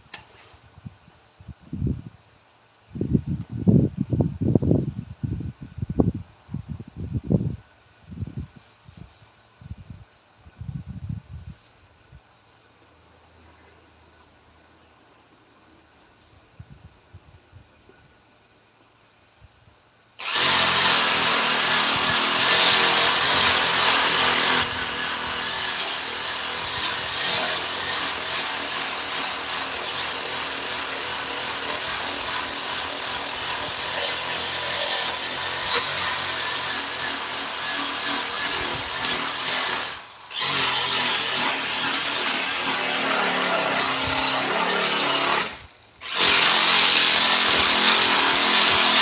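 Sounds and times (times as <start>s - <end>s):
power tool running against wood: 20.2s - 49.0s.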